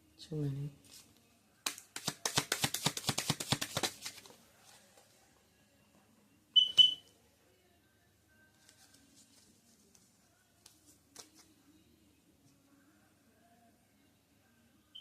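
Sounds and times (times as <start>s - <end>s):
cards being shuffled: 0.8s - 4.4s, 8.6s - 11.5s
sharp taps with high ring: 6.6s - 7.0s.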